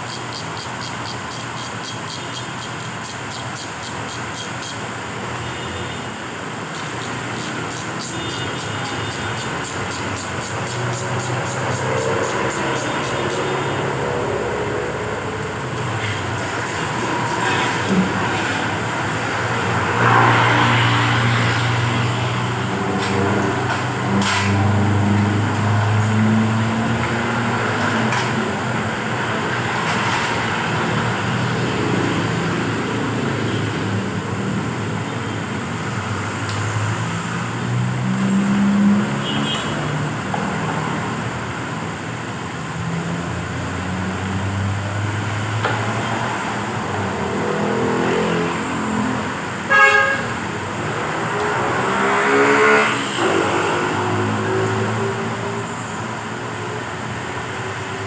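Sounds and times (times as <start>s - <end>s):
vehicle engines passing by: 0.0s - 58.0s.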